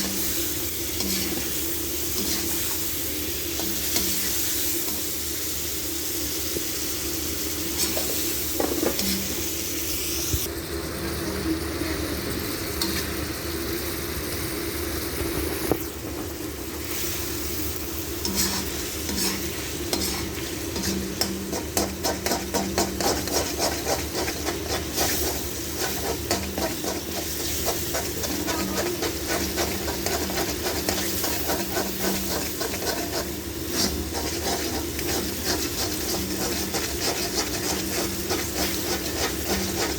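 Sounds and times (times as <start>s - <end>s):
spatula scraping a pan: 0.0s - 2.9s, 7.7s - 9.5s, 18.0s - 39.9s
food sizzling in a pan: 0.0s - 39.9s.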